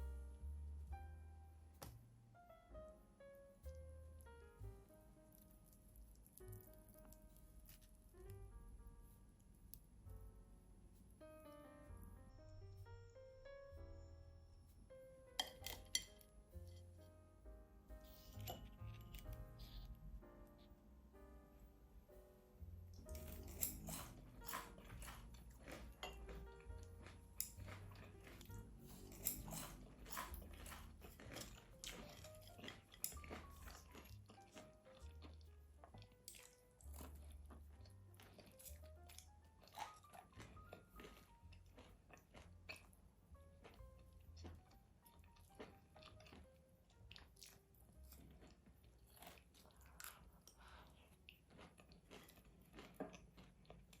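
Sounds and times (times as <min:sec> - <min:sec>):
soft background music: 0:00.0 - 0:54.0
crunching fried food: 0:05.2 - 0:08.4, 0:23.0 - 0:54.0.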